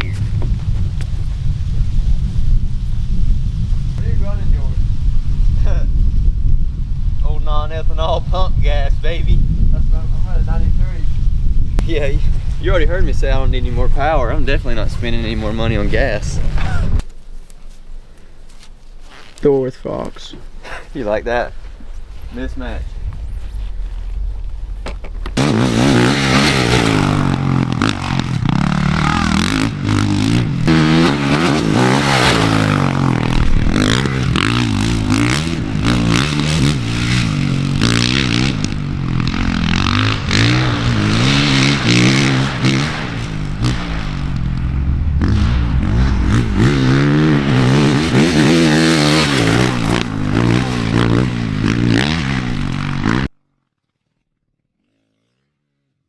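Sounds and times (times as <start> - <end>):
dirt bike engine revving: 24.2 - 53.3.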